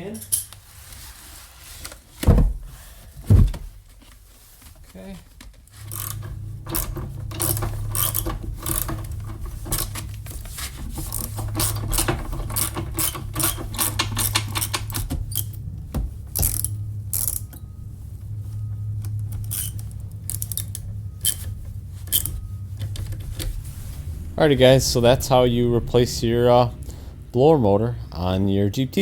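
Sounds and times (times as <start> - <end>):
steady low hum: 0.0 - 29.0
ratchet wrench clicking: 5.9 - 9.0, 11.1 - 15.6, 16.4 - 17.6, 19.4 - 21.5, 22.1 - 22.4.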